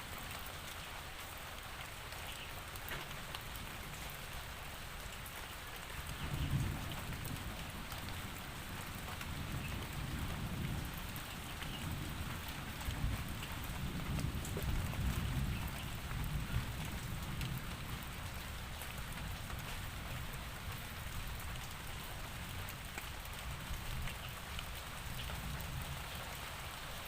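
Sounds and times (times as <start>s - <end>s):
steady rain: 0.0s - 27.0s
thunder rumbling: 6.0s - 20.7s.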